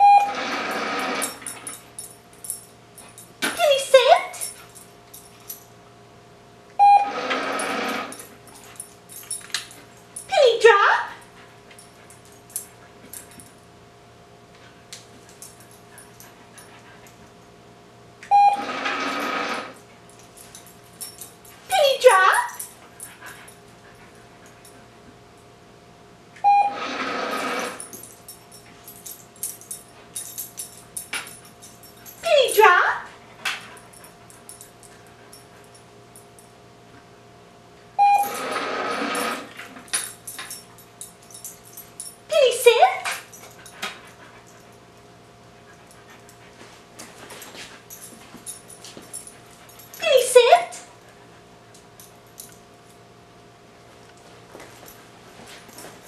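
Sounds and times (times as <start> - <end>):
treat dispenser beep: 0.0 - 0.4, 6.8 - 7.3, 18.3 - 18.8, 26.4 - 26.9, 38.0 - 38.6
short beep: 6.8 - 7.1
treat dispenser running: 18.2 - 19.8, 26.5 - 27.8, 38.1 - 39.6.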